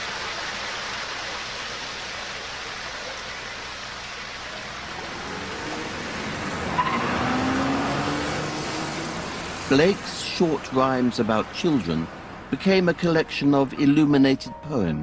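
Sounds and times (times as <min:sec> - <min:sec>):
flowing water rushing: 0:00.0 - 0:13.7
faint rising hum: 0:04.4 - 0:12.6.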